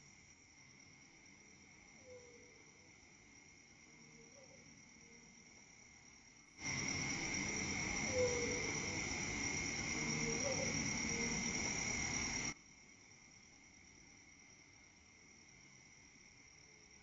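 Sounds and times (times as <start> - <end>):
crickets chirping: 0.0 - 17.0
loud hiss: 6.6 - 12.5.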